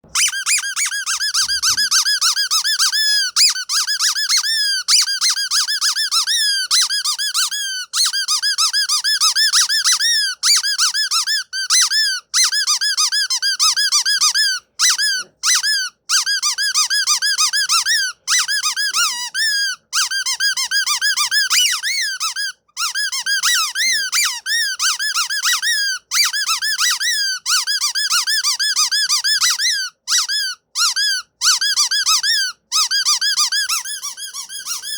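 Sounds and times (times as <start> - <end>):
rapid high-pitched squeaking chirps: 0.1 - 5.3, 32.9 - 34.9.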